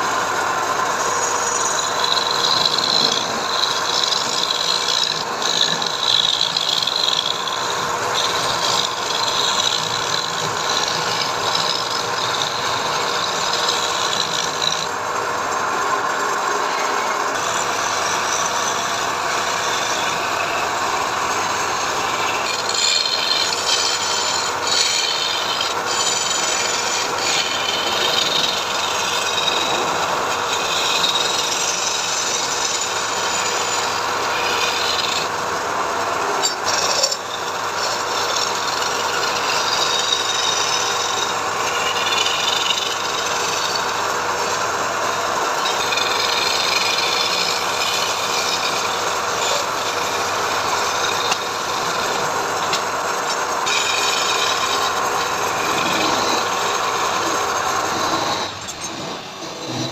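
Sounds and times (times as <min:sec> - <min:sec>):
power tool rasping wood: 0:00.0 - 0:59.9.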